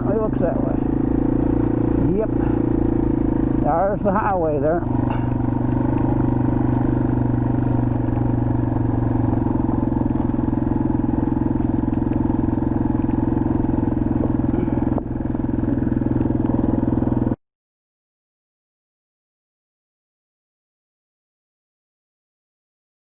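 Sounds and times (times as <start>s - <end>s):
motorcycle engine running: 0.0s - 17.4s.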